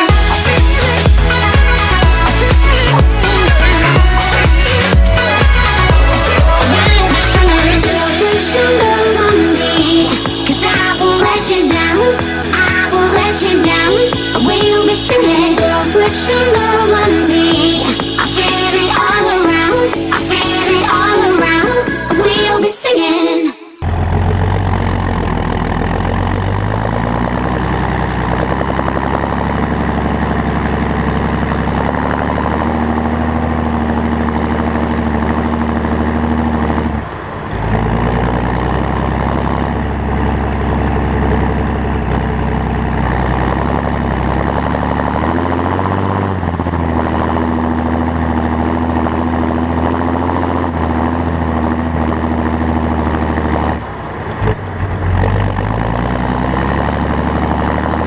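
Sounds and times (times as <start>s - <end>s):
tractor diesel engine running: 0.0s - 23.1s, 23.8s - 58.0s
faint high whistle: 54.2s - 55.1s.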